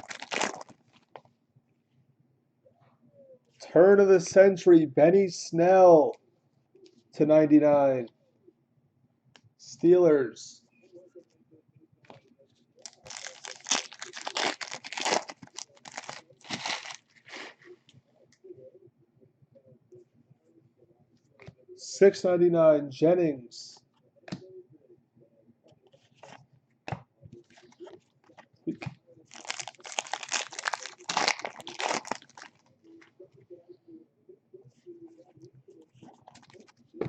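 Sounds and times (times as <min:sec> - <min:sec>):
card pack wrapper crinkling and tearing: 0:00.0 - 0:01.0, 0:12.8 - 0:17.6, 0:29.3 - 0:32.6.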